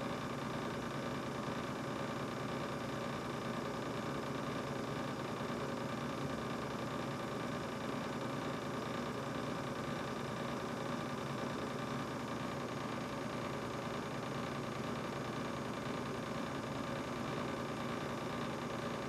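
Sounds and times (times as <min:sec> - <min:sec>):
refrigerator humming: 0:10.0 - 0:19.0.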